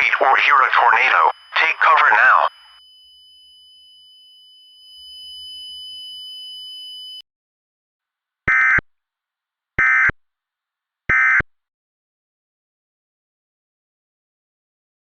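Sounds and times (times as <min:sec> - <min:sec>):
buzzy digital data tones: 0:00.0 - 0:07.2
steady high-pitched tone: 0:00.0 - 0:07.2.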